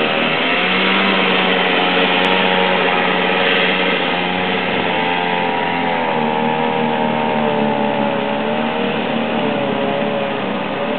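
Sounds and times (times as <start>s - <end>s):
constant hiss: 0.0s - 10.9s
engine running steadily: 0.0s - 10.9s.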